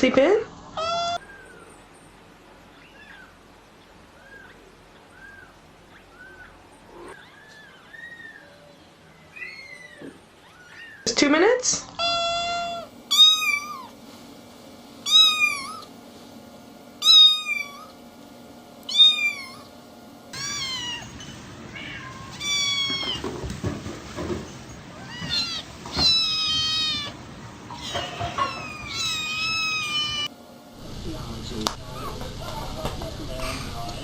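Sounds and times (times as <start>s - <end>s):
kittens meowing: 0.8s - 1.7s, 2.7s - 3.4s, 4.2s - 11.1s, 12.0s - 14.0s, 15.1s - 15.9s, 17.0s - 17.9s, 18.8s - 19.7s, 20.3s - 23.3s, 24.9s - 30.3s.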